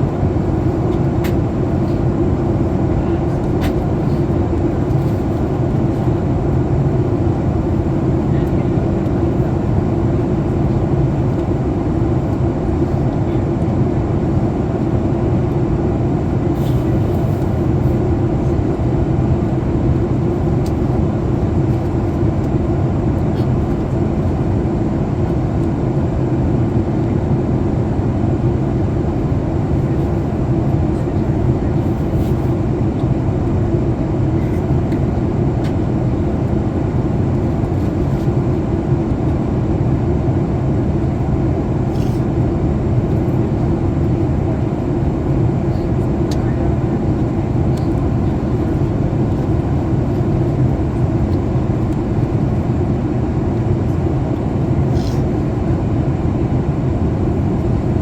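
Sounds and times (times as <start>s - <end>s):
jet engine drone: 0.0s - 58.0s.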